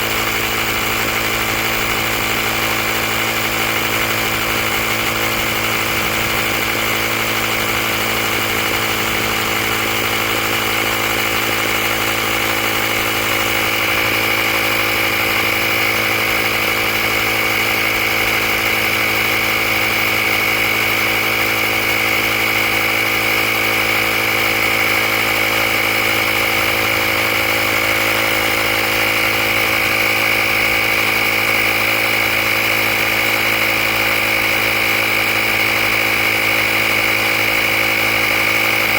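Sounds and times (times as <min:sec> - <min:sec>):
air compressor running: 0:00.0 - 0:38.9.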